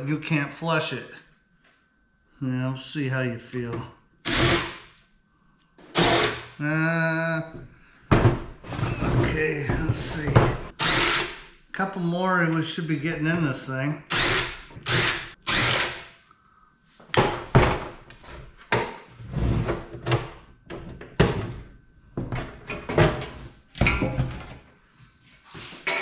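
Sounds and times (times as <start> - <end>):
cordless drill running: 4.2 - 4.9, 5.9 - 6.6, 10.8 - 11.5, 14.1 - 16.1.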